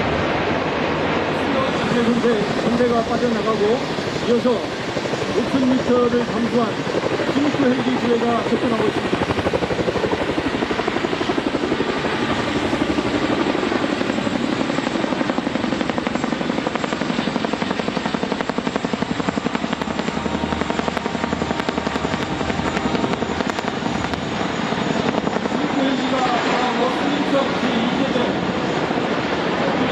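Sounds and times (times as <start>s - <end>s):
helicopter rotors beating: 0.0s - 29.9s.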